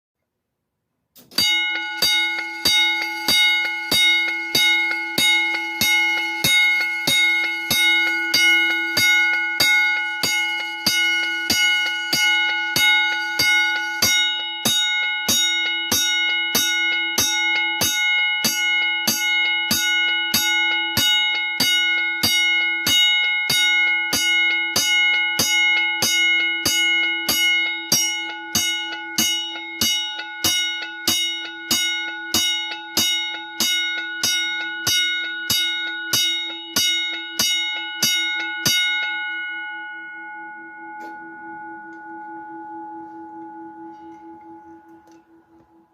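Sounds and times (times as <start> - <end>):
fire alarm bell strokes: 1.3 - 45.9.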